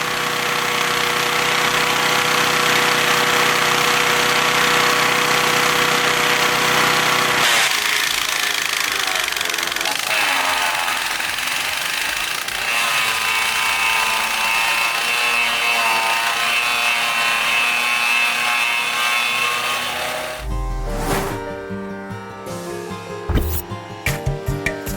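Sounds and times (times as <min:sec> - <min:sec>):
high whine: 0:20.4 - 0:21.7.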